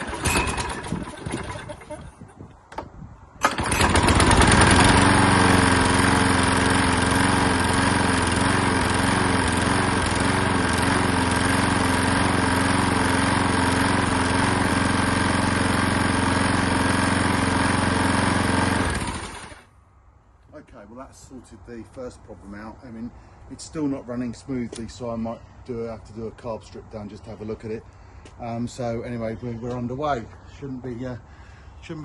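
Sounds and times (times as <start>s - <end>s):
lawn mower engine running: 0.0s - 2.8s, 3.4s - 19.7s.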